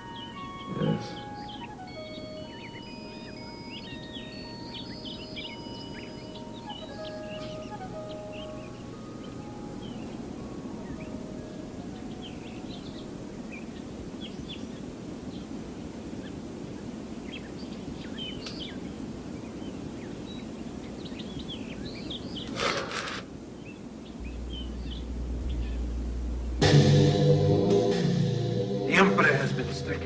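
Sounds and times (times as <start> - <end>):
small birds chirping: 0.0 - 26.6
steady background hiss: 0.0 - 30.0
low rumble: 24.2 - 30.0.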